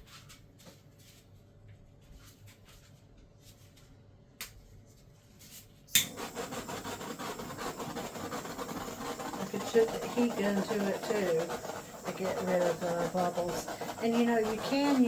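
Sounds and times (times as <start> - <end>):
torch igniter click: 5.9 - 6.5
torch flame hissing: 6.0 - 15.0.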